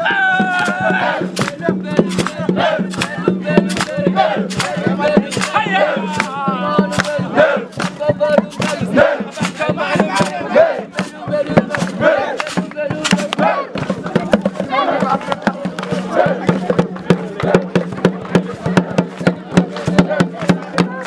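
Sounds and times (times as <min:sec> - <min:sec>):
shouts: 0:00.0 - 0:01.3
crowd chanting and singing: 0:00.0 - 0:21.0
sharp rhythmic beats: 0:00.0 - 0:21.0.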